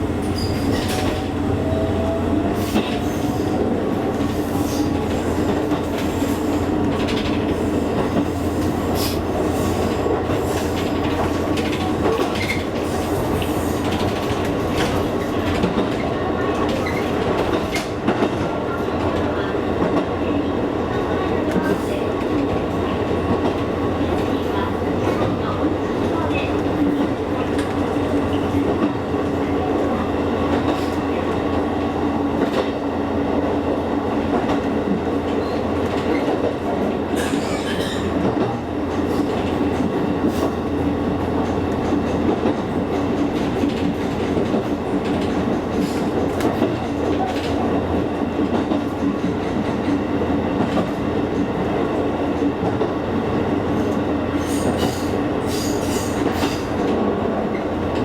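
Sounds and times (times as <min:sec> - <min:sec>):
train running rumble: 0:00.0 - 0:58.0.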